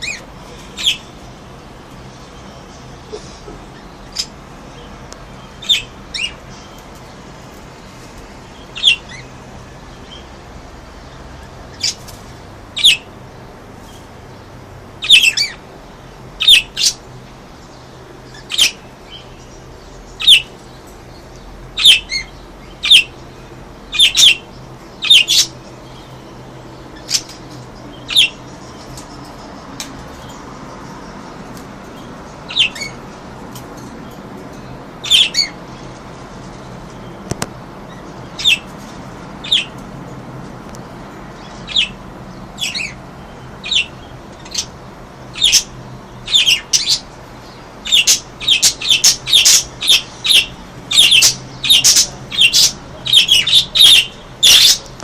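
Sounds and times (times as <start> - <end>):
budgerigars calling: 0.0 - 1.2, 5.6 - 6.7, 8.6 - 9.3, 11.7 - 12.1, 12.8 - 13.1, 15.0 - 15.6, 16.4 - 17.0, 18.3 - 19.5, 20.2 - 20.6, 21.3 - 23.2, 23.8 - 26.1, 27.0 - 28.8, 32.5 - 33.0, 35.0 - 35.6, 37.9 - 38.7, 39.4 - 39.8, 41.4 - 42.0, 42.6 - 43.0, 43.6 - 55.0.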